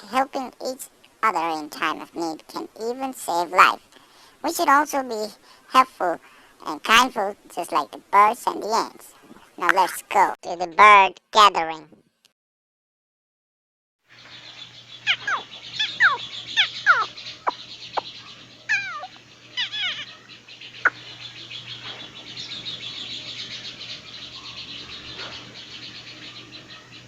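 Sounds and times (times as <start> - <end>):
birds twittering: 14.1 - 27.0
loud descending bird calls: 14.1 - 27.0.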